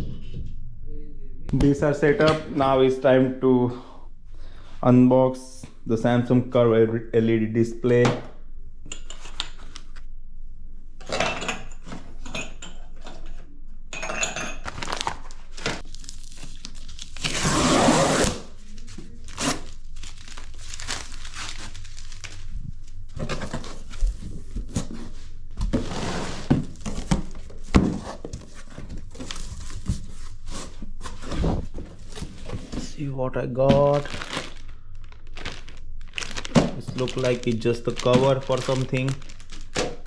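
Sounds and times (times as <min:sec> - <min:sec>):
packing tearing: 0:14.7 - 0:22.5, 0:33.8 - 0:40.0
cardboard box crinkling: 0:18.7 - 0:22.5, 0:33.8 - 0:40.0
cardboard scraping: 0:23.2 - 0:32.9.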